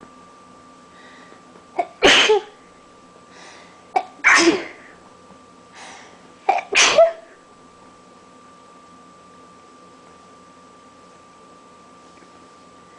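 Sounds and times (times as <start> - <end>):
faint intake of breath: 0.9 - 1.4, 3.3 - 3.9, 5.7 - 6.2
person sneezing: 1.8 - 2.6, 4.0 - 4.9, 6.5 - 7.4.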